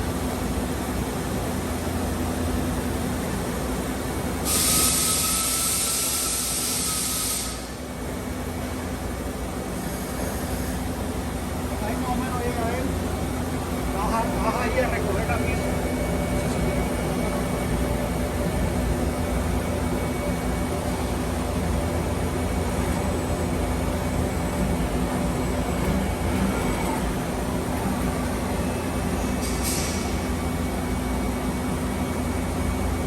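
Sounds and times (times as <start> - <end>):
brief hiss: 4.5 - 7.8, 29.4 - 30.2
machine hum and rumble: 7.7 - 33.0.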